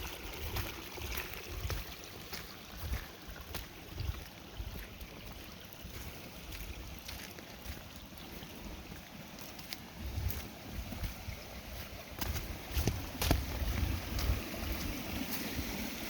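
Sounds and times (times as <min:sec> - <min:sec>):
wind buffeting microphone: 0:10.0 - 0:16.0.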